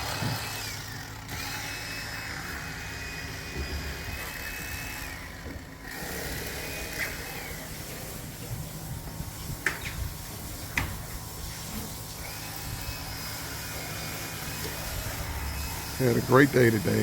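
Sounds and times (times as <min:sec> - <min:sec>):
high motor whine winding down: 0:00.0 - 0:08.4, 0:12.1 - 0:17.0.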